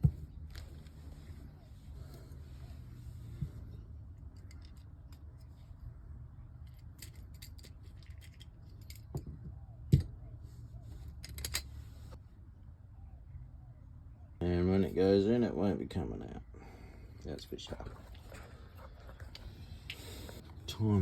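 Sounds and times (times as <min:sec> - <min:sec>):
parts clicking and clinking: 0:04.1 - 0:05.9, 0:06.5 - 0:10.2, 0:11.0 - 0:11.7.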